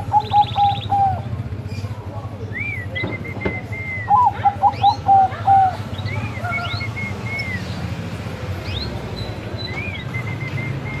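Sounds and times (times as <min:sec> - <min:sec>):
dove cooing: 0:00.0 - 0:01.3, 0:03.1 - 0:06.7
birds whistling and chirping: 0:00.0 - 0:11.0.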